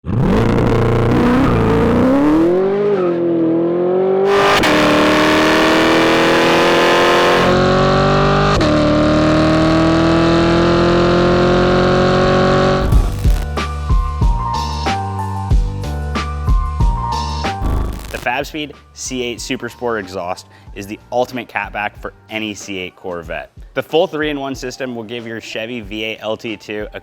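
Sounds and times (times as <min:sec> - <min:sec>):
car engine accelerating hard: 0:00.0 - 0:13.5, 0:17.6 - 0:18.2.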